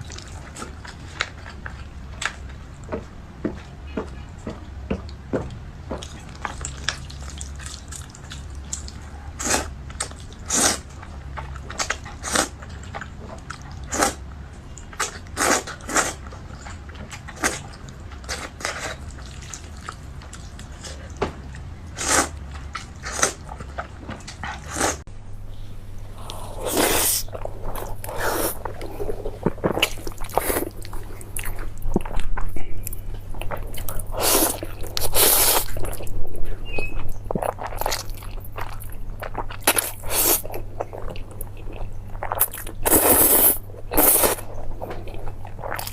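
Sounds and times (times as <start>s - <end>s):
person chewing and biting: 25.9s - 45.9s.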